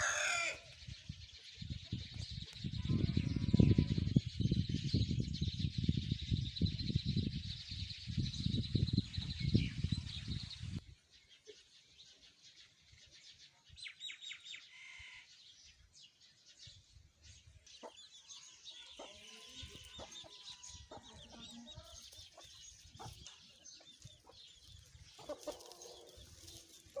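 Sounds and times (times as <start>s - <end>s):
chickens clucking: 18.9s - 27.0s.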